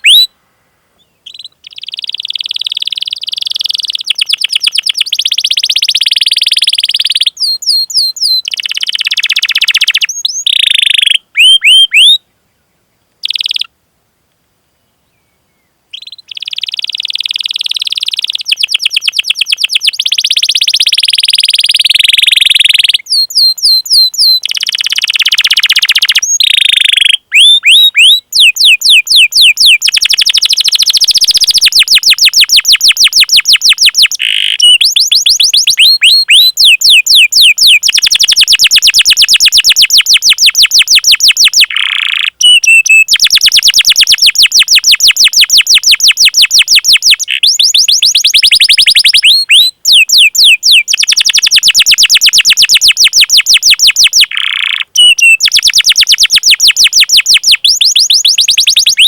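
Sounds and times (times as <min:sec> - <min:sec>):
canary singing trills: 0:00.0 - 0:00.3, 0:01.0 - 0:12.2, 0:13.2 - 0:13.7, 0:15.2 - 0:59.0.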